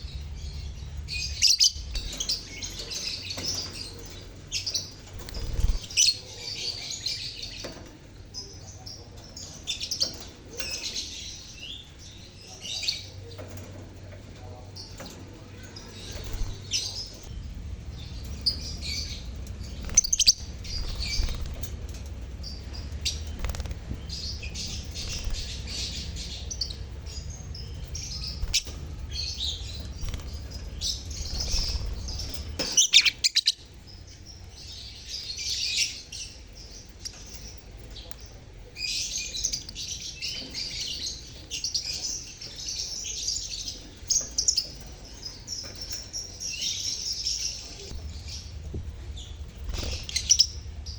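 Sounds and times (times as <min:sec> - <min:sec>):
lovebirds chirping and twittering: 0:00.0 - 0:50.9
low steady rumble: 0:13.2 - 0:32.6, 0:47.5 - 0:50.9.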